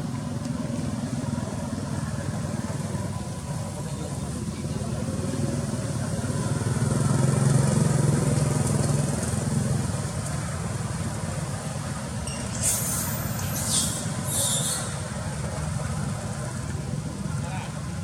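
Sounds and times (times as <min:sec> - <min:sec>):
high-pitched squeals: 0:12.3 - 0:15.2.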